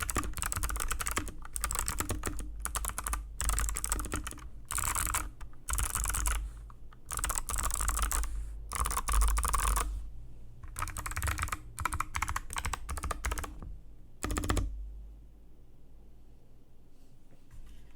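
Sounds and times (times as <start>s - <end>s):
mechanical keyboard typing: 0.0s - 10.0s, 10.6s - 14.8s.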